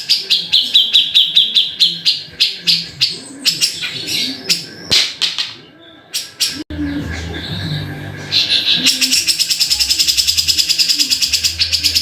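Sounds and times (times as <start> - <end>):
bulbul chirping: 8.3 - 12.0.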